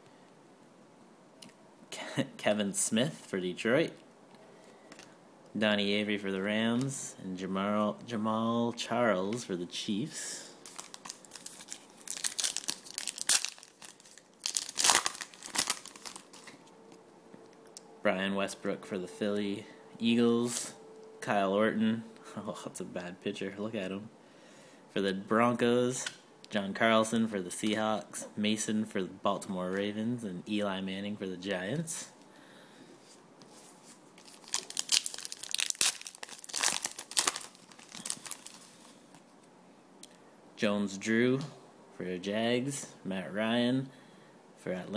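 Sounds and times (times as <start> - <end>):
foil wrapper crinkling and tearing: 10.6 - 16.7, 34.2 - 38.7.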